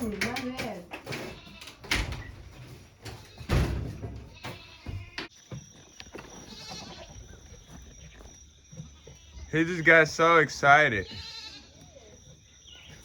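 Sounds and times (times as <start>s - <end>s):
knocks and thumps: 0.0s - 5.7s
farm animal calling: 0.0s - 13.0s.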